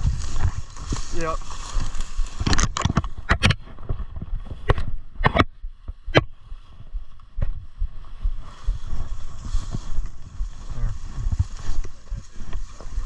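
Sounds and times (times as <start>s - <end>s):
footsteps crunching: 0.0s - 13.0s
low rumble: 0.0s - 13.0s
brush swishing: 8.1s - 13.0s.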